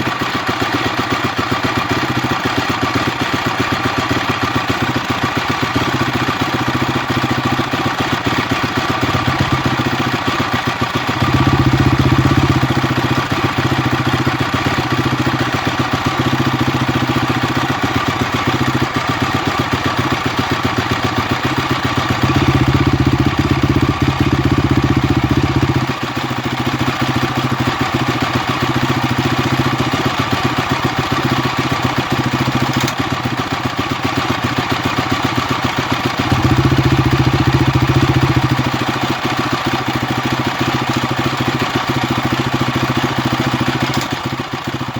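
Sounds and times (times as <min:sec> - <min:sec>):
motorcycle engine idling: 0:00.0 - 0:44.9.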